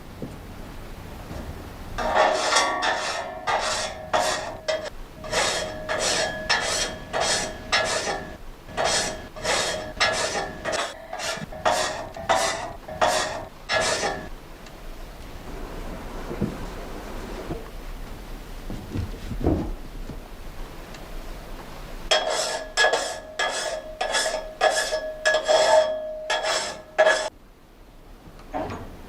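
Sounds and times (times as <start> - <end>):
hand tool rasping: 2.0 - 14.3, 22.1 - 27.3
steady metallic ring: 2.0 - 14.3, 22.1 - 27.3.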